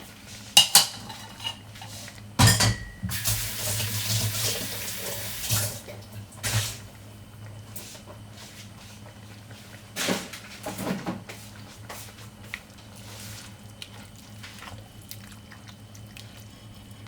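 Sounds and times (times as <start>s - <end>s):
kitchenware clunk: 0.6s - 1.6s, 2.4s - 3.3s
kitchen tap running: 2.4s - 6.9s.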